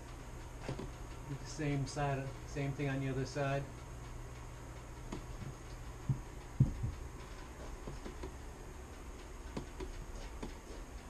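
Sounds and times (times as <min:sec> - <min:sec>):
low steady hum: 0:00.0 - 0:11.0
short dull knocks: 0:05.1 - 0:07.0.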